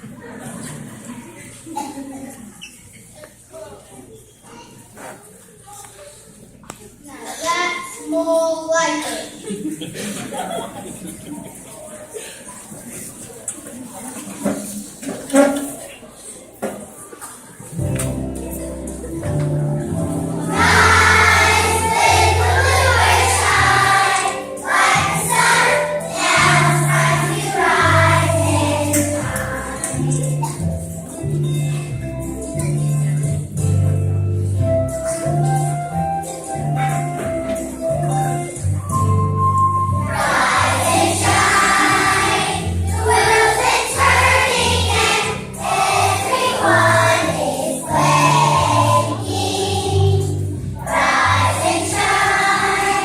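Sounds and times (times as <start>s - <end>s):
instrumental backing music: 17.7s - 53.0s
several voices singing together: 20.5s - 30.1s, 40.1s - 53.0s.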